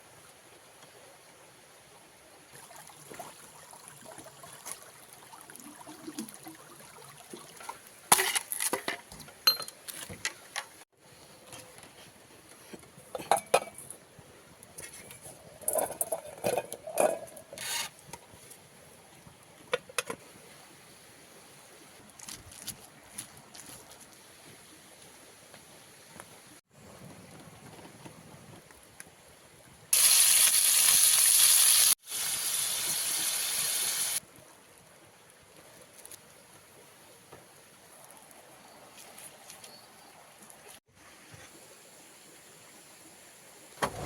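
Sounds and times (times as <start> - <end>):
pots and utensils clattering: 8.1 - 10.2, 13.1 - 13.9, 14.9 - 17.6.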